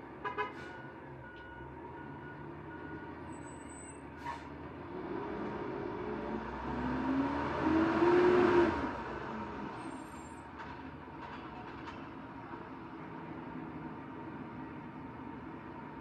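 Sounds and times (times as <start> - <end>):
truck engine revving and idling: 4.6 - 10.3.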